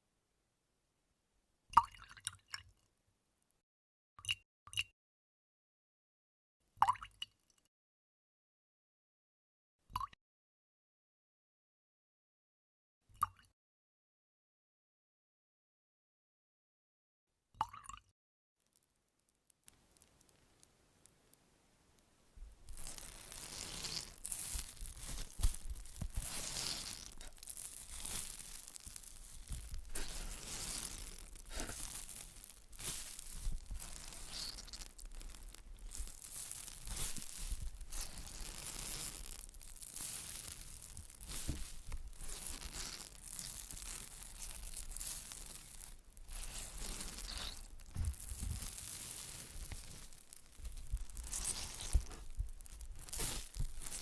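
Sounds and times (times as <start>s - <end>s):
material rustled and scratched: 22.6s - 54.0s.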